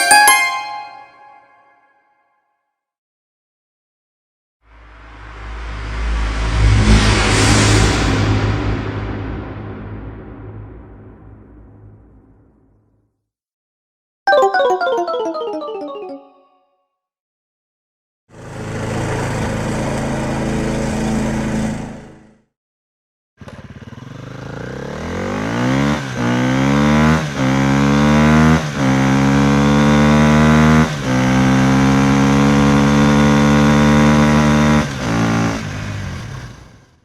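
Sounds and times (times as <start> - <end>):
vehicle engine revving through gears: 23.4 - 37.0.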